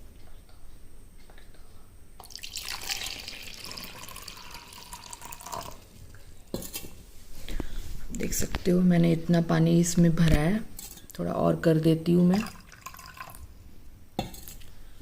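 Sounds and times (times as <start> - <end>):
water pouring into plastic chamber: 2.2 - 5.9, 12.4 - 13.4.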